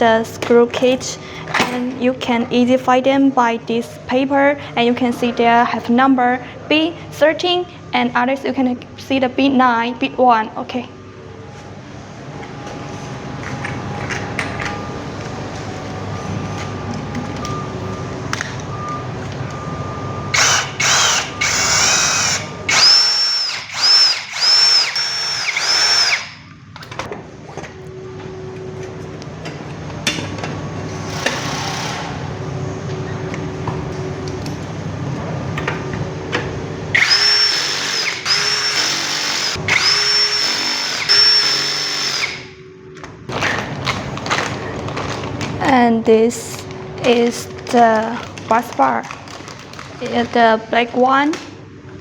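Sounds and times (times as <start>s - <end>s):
drill-driver whirring: 20.3s - 26.4s, 31.0s - 32.2s, 37.0s - 42.5s.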